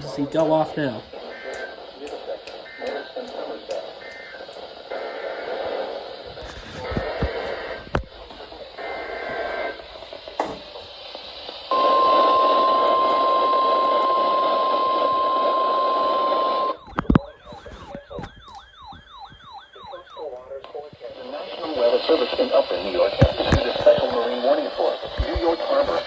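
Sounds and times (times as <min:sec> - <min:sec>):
warbling electronic alarm: 0:00.0 - 0:03.3, 0:03.9 - 0:04.6, 0:11.7 - 0:20.7
steady alarm tone: 0:00.0 - 0:05.1, 0:08.9 - 0:20.7
screechy data burst: 0:00.0 - 0:06.6
radio hiss: 0:00.0 - 0:26.0.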